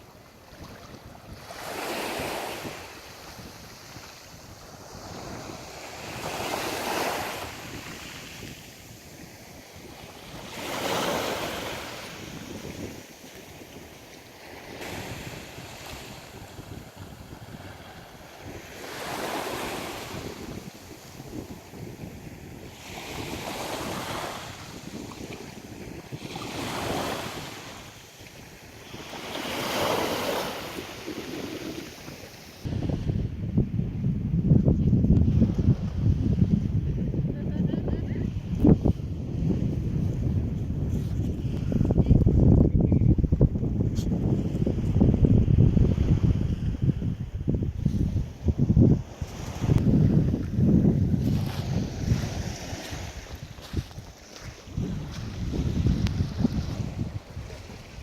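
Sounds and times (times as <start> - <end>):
sea waves washing on shore: 0.0 - 33.0, 47.8 - 58.0
wind buffeting microphone: 0.0 - 58.0.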